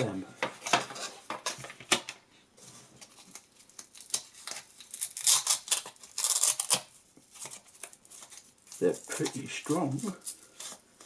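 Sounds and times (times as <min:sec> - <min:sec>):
velcro strap ripping: 0:03.1 - 0:10.7.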